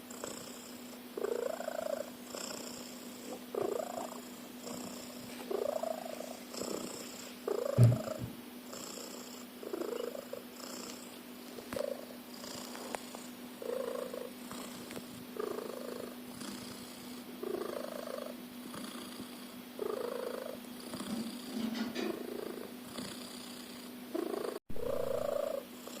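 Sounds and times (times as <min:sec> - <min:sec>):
cat snoring: 0:00.0 - 0:26.0
thump: 0:07.8 - 0:08.4.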